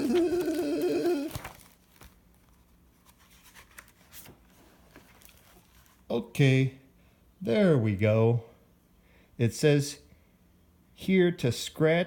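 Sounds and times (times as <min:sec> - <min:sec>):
book pages rustling: 0:00.0 - 0:06.1.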